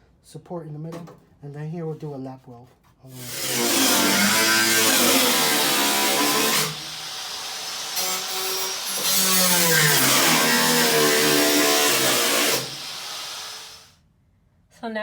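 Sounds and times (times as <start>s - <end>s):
power tool cutting sheet metal: 3.1s - 13.9s.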